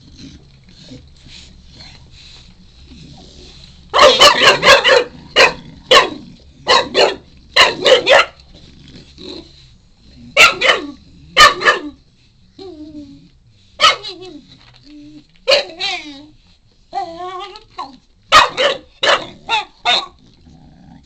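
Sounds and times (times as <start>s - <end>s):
puppy barking: 3.9s - 8.4s, 10.4s - 12.0s, 13.8s - 14.1s, 15.5s - 15.8s, 18.3s - 20.2s.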